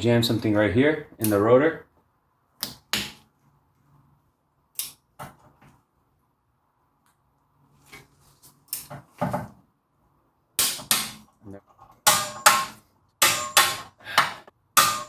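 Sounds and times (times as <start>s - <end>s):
hand tools knocking on bolts: 12.0s - 15.0s.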